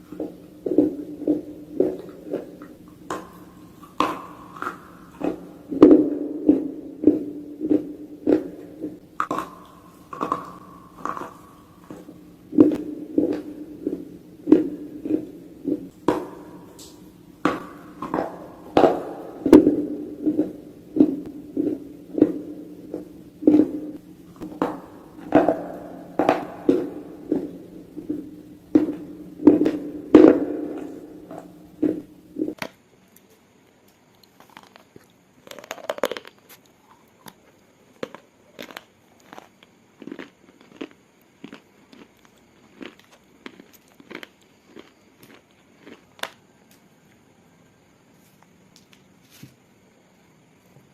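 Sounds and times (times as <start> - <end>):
steady low hum: 0.0 - 32.6
person chewing brittle food: 0.0 - 47.3.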